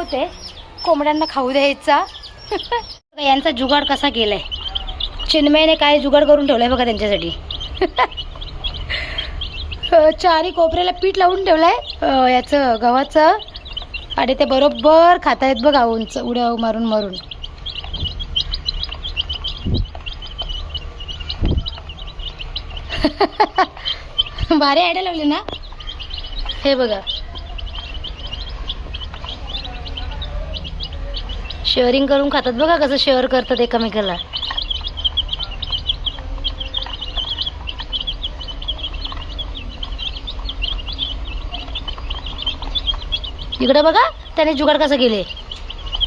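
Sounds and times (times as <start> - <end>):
chicks cheeping: 0.0 - 46.0
dull low thumps: 17.0 - 23.0.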